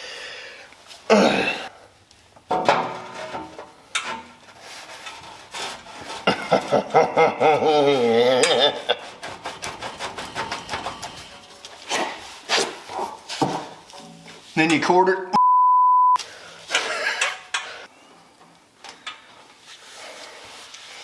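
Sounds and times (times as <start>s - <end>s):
metal exhaust pipe scraping: 2.6s - 7.0s, 8.3s - 14.6s.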